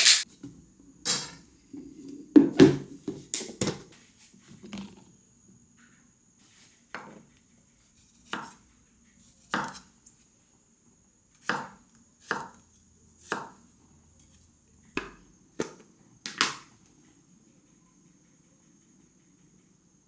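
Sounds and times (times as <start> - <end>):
knife chopping on cutting board: 8.3 - 8.6, 9.5 - 9.8, 11.4 - 12.6, 13.2 - 13.6.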